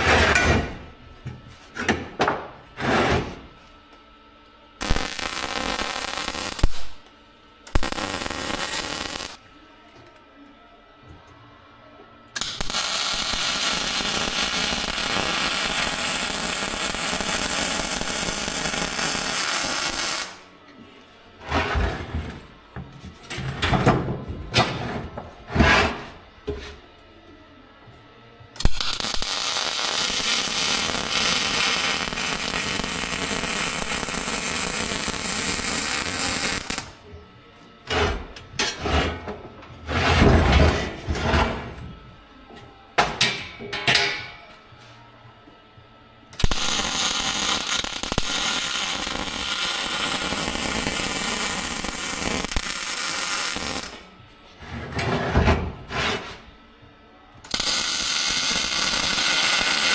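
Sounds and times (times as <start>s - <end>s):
welding arc hissing: 4.8s - 9.4s, 12.4s - 20.5s, 28.6s - 37.0s, 46.4s - 54.1s, 57.5s - 59.9s.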